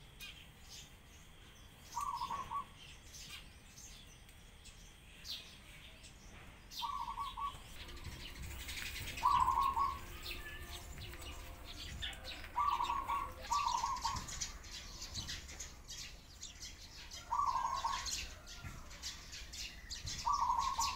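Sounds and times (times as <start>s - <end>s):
sparrows chirping: 0.0s - 20.9s
doves cooing: 2.0s - 2.8s, 6.8s - 15.6s, 17.2s - 19.0s, 20.1s - 20.9s.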